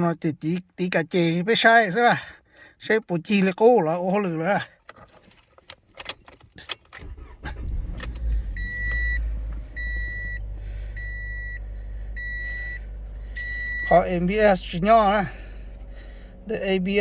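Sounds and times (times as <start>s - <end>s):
car engine starting and idling: 5.8s - 17.0s
seat-belt reminder chime beeps: 8.6s - 10.4s, 11.0s - 11.6s, 12.2s - 14.1s.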